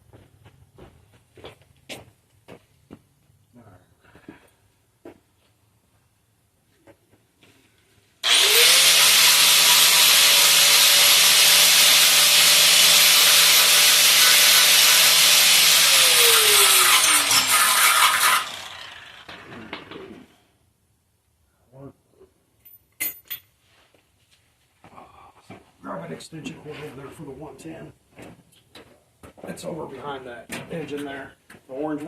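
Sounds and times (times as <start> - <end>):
electric grinder grinding metal: 8.2 - 20.2.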